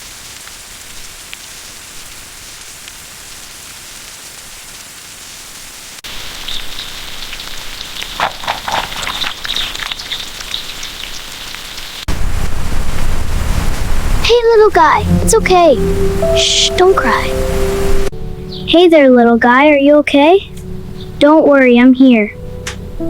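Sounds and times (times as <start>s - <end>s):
steady rain falling: 0.0s - 18.1s.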